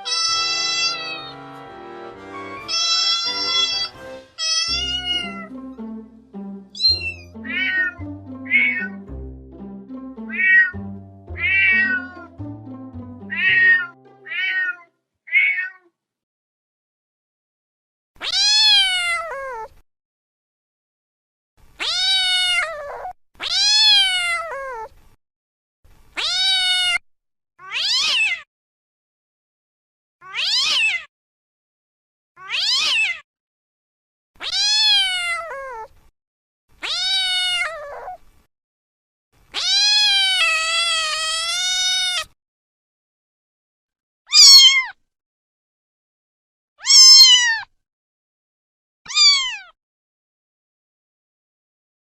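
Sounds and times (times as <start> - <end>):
cat meowing: 0.0 - 1.3, 2.7 - 5.5, 6.8 - 9.0, 10.3 - 10.8, 11.4 - 12.3, 13.3 - 15.9, 18.2 - 19.7, 21.8 - 24.9, 26.2 - 27.0, 27.6 - 28.4, 30.2 - 31.1, 32.4 - 33.2, 34.4 - 35.9, 36.8 - 38.2, 39.5 - 42.4, 44.3 - 45.0, 46.8 - 47.7, 49.1 - 49.8.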